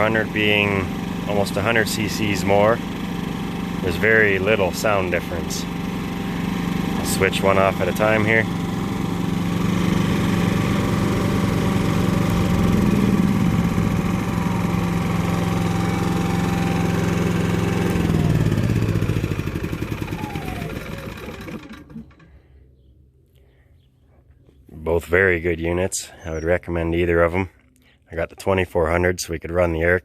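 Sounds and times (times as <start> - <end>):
generators running: 0.0 - 22.6.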